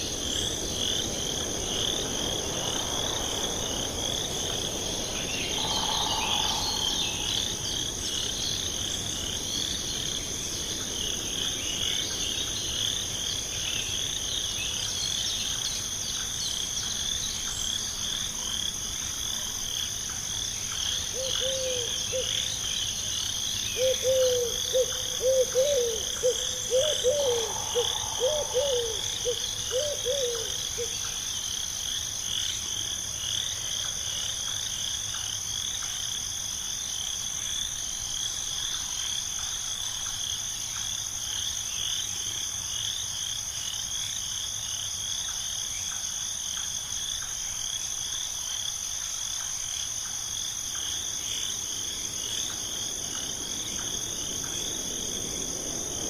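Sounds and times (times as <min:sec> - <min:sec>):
insects trilling: 0:00.0 - 0:56.0
frog croaking: 0:05.4 - 0:08.3, 0:24.2 - 0:30.9.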